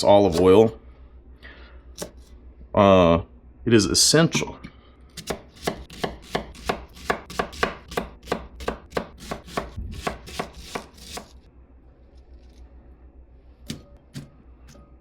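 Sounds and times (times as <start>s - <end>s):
knife chopping onion on board: 0.0s - 0.6s, 2.0s - 2.2s, 5.2s - 11.3s, 13.7s - 14.3s.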